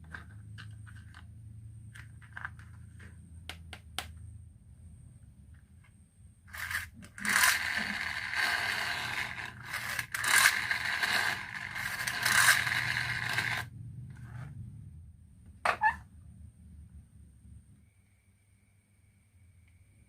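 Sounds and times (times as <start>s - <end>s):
marbles rolling along a track: 6.5s - 13.7s.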